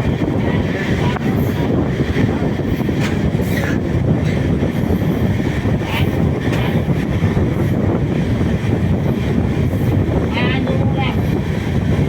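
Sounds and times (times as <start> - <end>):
train wheels rumbling on rails: 0.0 - 12.0.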